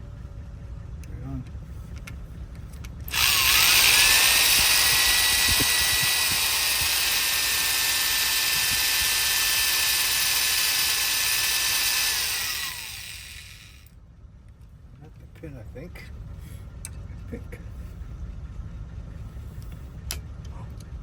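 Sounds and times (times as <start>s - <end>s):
power drill motor whine: 3.1s - 13.9s.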